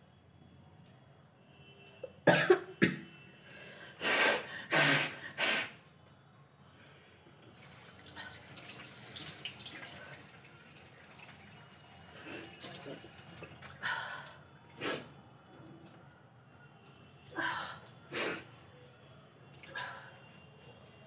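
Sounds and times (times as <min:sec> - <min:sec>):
woman coughing: 0:02.2 - 0:03.1
tap running into wash basin: 0:07.5 - 0:11.8, 0:12.4 - 0:13.8.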